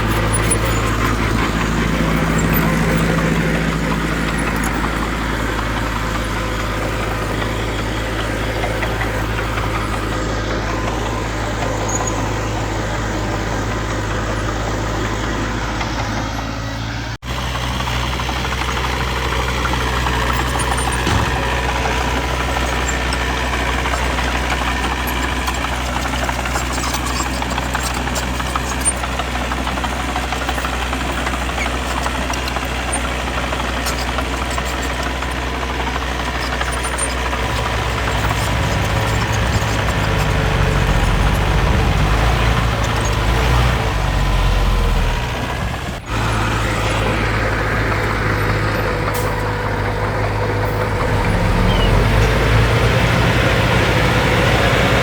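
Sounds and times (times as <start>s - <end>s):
diesel engine humming: 0.0s - 55.0s.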